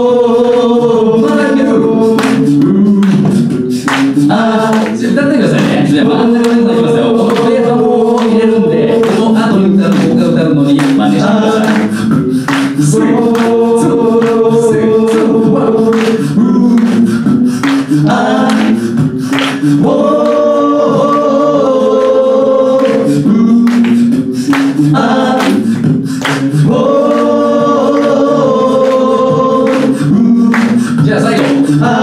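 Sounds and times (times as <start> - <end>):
a cappella group singing: 0.0 - 32.0.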